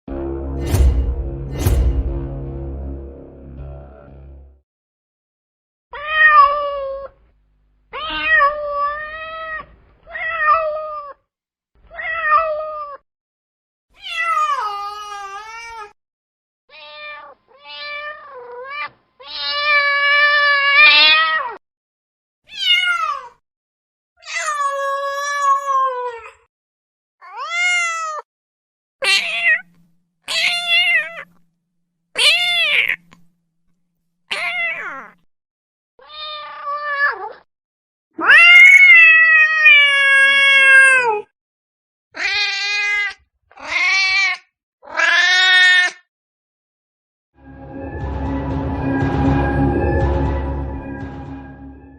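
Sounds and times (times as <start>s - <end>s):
cat meowing: 8.0s - 11.2s, 11.9s - 13.0s, 14.0s - 15.9s, 16.7s - 21.6s, 27.2s - 28.2s, 29.0s - 31.3s, 32.2s - 33.1s, 34.3s - 35.2s, 36.0s - 37.4s, 38.2s - 41.2s, 42.2s - 45.9s.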